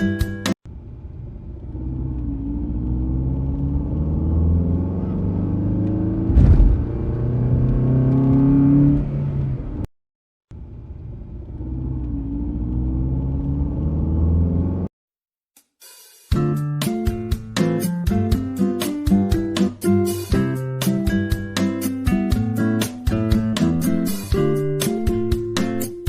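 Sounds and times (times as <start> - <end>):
sharp knock: 6.2 - 7.1.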